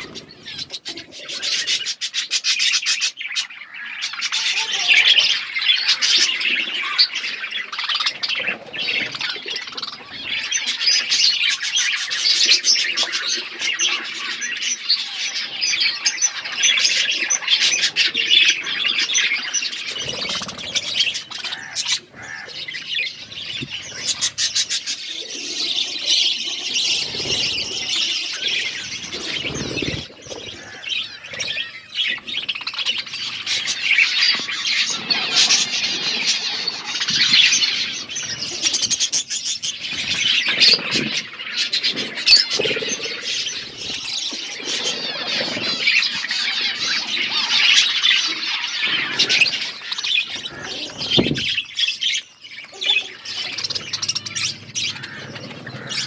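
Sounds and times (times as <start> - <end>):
budgerigars chirping and chattering: 0.0 - 56.0.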